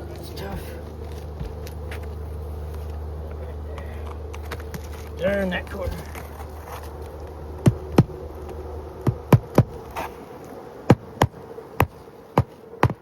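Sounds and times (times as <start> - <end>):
hammer striking roofing nails: 9.0 - 9.8, 10.9 - 13.0.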